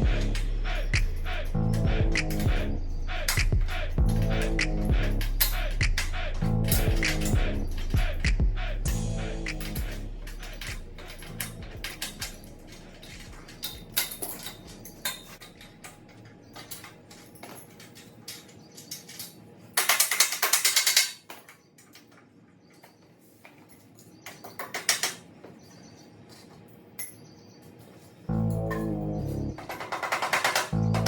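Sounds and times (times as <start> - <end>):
rapid clicks: 0.0 - 15.4, 29.5 - 31.0
metal parts clinking: 9.5 - 25.3.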